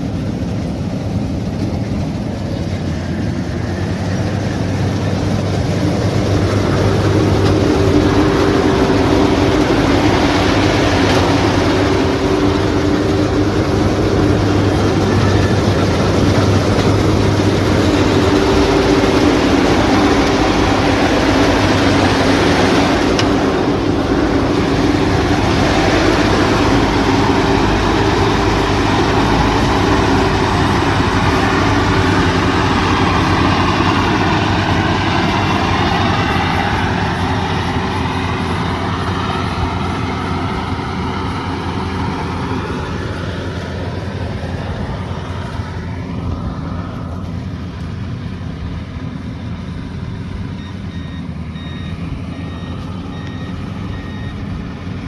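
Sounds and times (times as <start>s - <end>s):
combine harvester running: 0.0s - 55.0s
reversing alarm beeps: 50.5s - 54.8s.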